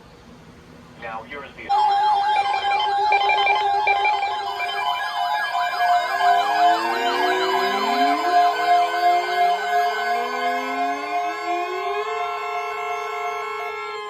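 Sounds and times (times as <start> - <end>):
rapid beeping: 1.0 - 12.1
siren-like alarm tones: 1.7 - 14.0
slow rising siren glides: 1.7 - 14.0
steady alarm tone: 1.7 - 14.0.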